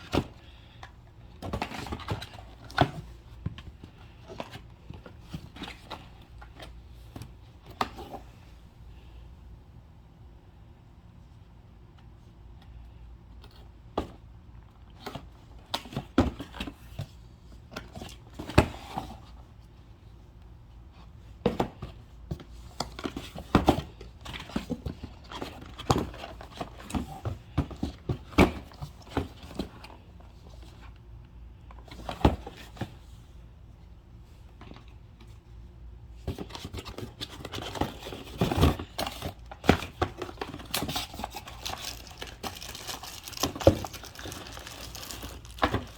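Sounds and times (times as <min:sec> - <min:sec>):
packaging crinkling: 0:40.2 - 0:45.9.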